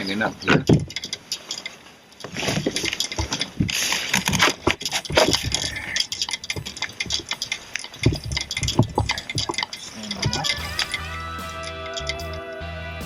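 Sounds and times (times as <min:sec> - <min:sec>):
rustling hiss: 0:00.0 - 0:13.0
plastic kayak gear knocking and rattling: 0:00.4 - 0:01.3, 0:02.2 - 0:10.6.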